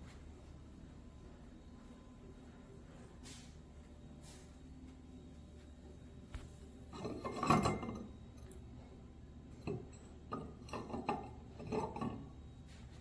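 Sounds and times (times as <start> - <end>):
plates and bowls clinking: 7.0 - 8.1, 9.7 - 12.3.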